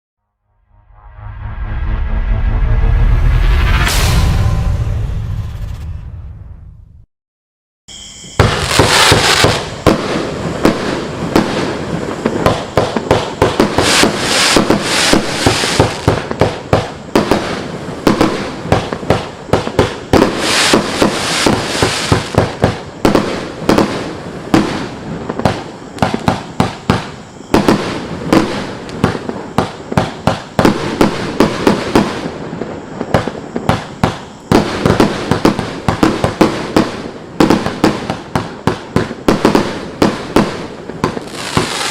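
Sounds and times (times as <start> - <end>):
firework pops and bangs: 8.4 - 11.6, 12.2 - 32.2, 33.0 - 41.9
firework crackling hiss: 8.4 - 41.9.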